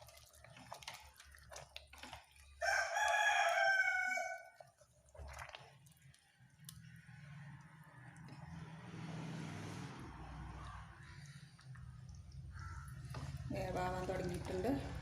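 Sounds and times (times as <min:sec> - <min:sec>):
spoon stirring in a pot: 0:00.0 - 0:08.6, 0:11.0 - 0:15.0
rooster crowing: 0:02.6 - 0:04.6.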